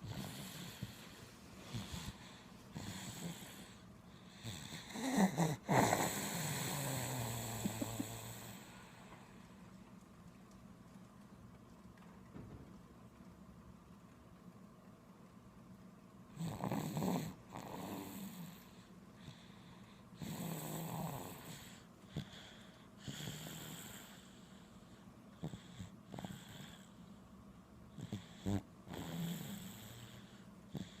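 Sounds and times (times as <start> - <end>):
baby snoring: 0.0 - 1.1, 1.7 - 8.7, 16.4 - 18.6, 20.2 - 22.3, 25.4 - 26.9, 28.0 - 31.0.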